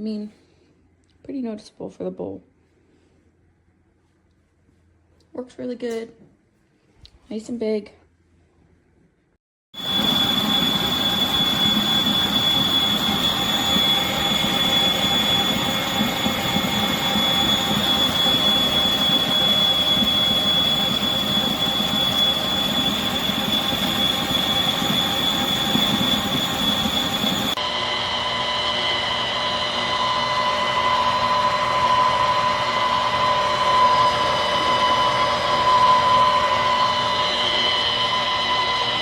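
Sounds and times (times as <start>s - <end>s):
stand mixer motor whining: 9.8s - 39.0s.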